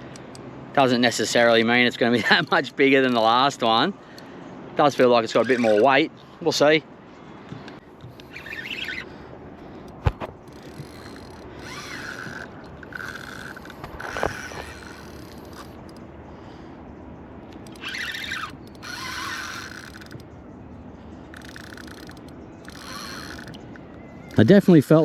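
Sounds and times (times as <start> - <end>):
fishing reel ratcheting and whirring: 4.9 - 6.0, 8.0 - 16.1, 17.5 - 20.4, 21.3 - 25.0.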